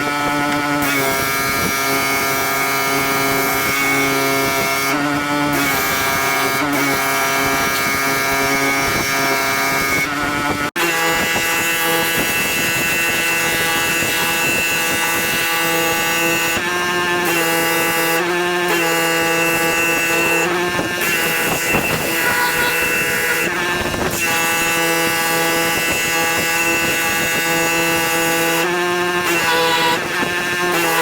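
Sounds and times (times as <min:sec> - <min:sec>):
pressure washer engine running: 0:11.2 - 0:31.0.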